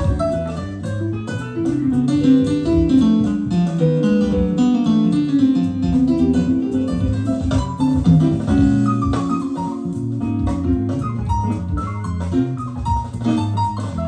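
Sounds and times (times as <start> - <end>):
guitar and piano music: 0.0 - 14.0.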